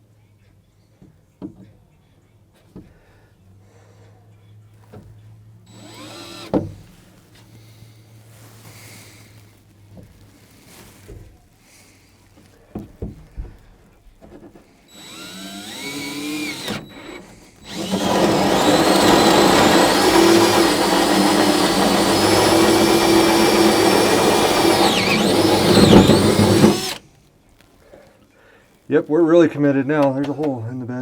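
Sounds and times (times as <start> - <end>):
power drill with hole saw cutting: 5.7 - 6.9, 14.9 - 27.0.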